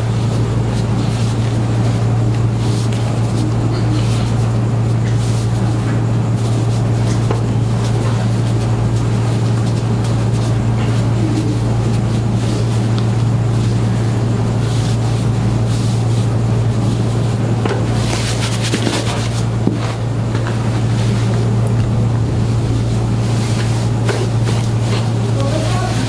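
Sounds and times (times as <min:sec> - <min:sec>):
low-pitched motor drone: 0:20.1 - 0:26.0.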